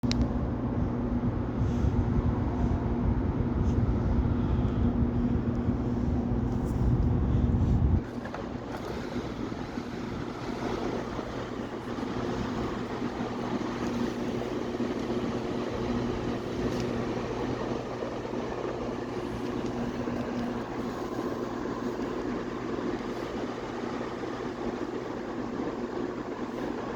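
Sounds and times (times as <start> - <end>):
loud low rumble: 0.0 - 8.0
faint hum: 0.0 - 26.9
wind rushing on platform: 0.0 - 26.9.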